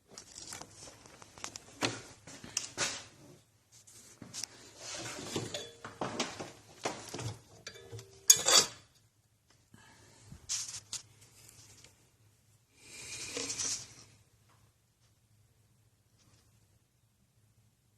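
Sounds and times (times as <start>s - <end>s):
metal tools clattering: 5.2s - 6.2s, 7.6s - 8.9s.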